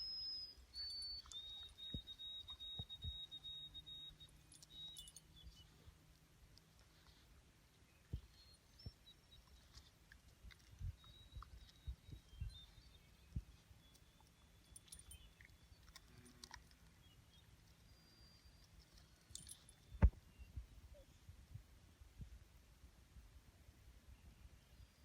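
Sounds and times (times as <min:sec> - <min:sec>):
faint high whistles: 0:00.0 - 0:05.9, 0:10.7 - 0:16.1.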